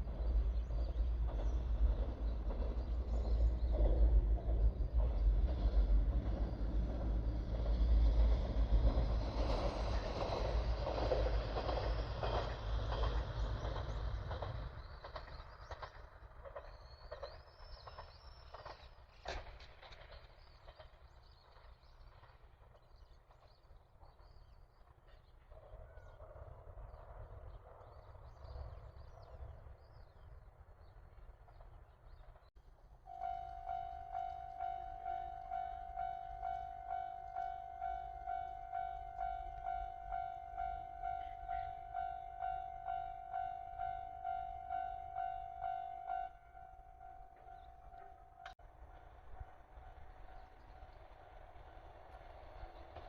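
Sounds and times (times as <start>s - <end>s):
train rumbling past: 0.0s - 53.0s.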